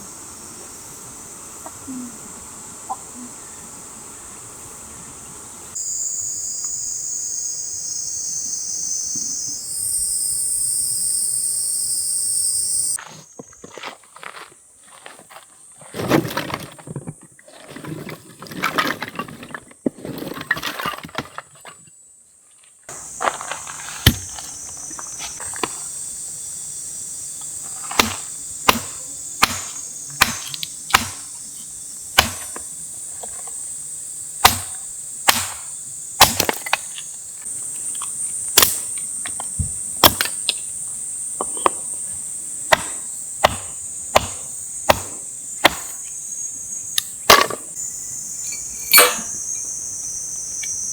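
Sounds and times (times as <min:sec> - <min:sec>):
high-pitched insect chorus: 0:00.0 - 0:16.8, 0:20.4 - 0:50.9
scraping and rustling: 0:13.0 - 0:21.8, 0:22.5 - 0:25.9.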